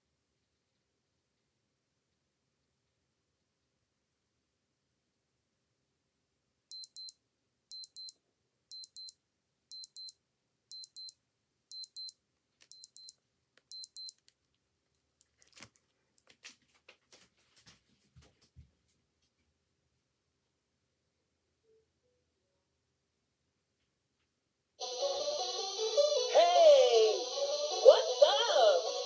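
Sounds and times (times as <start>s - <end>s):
digital watch alarm beeping: 6.7s - 14.2s
clicks and rustles: 14.2s - 18.5s.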